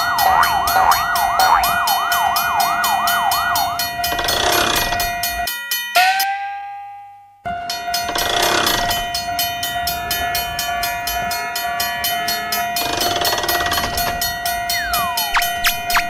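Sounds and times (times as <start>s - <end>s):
steady high tone: 0.0s - 4.1s, 14.5s - 16.0s
rapid clicks: 9.9s - 16.0s.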